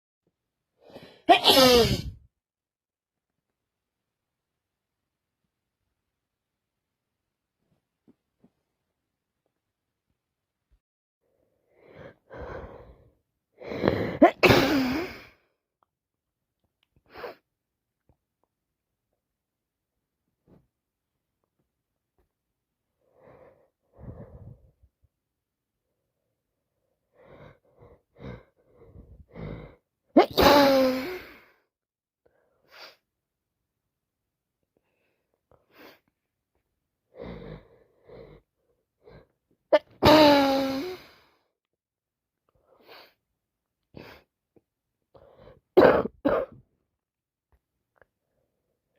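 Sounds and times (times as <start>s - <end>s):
person sneezing: 1.2s - 2.2s, 13.9s - 15.2s, 30.2s - 31.3s, 39.8s - 41.0s, 45.8s - 46.6s
person breathing: 11.3s - 14.2s, 23.0s - 24.8s, 45.1s - 45.7s.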